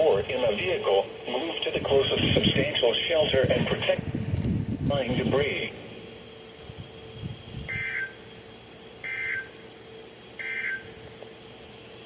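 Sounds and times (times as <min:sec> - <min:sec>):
buzzy digital data bursts: 0:06.4 - 0:08.4, 0:09.0 - 0:09.6.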